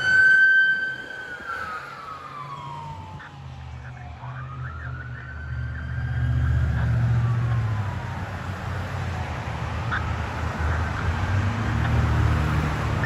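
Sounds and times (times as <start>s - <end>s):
electronic siren winding down: 0.0s - 8.9s
vehicle engine rumble: 0.0s - 13.0s.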